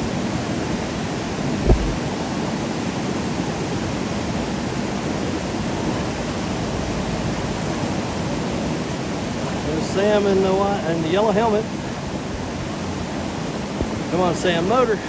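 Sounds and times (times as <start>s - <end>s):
whitewater rapids rushing: 0.1s - 15.0s
low thump: 1.6s - 2.0s.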